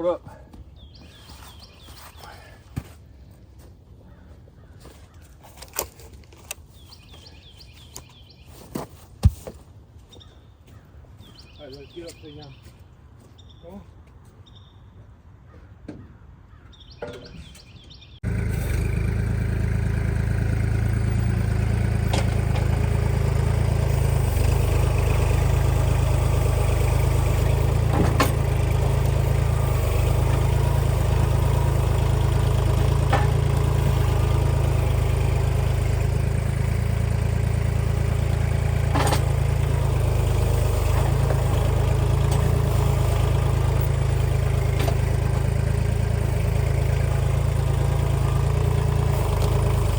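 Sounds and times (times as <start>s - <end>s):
tractor diesel engine running: 16.8s - 49.9s
sharp metal clanks: 38.9s - 39.4s.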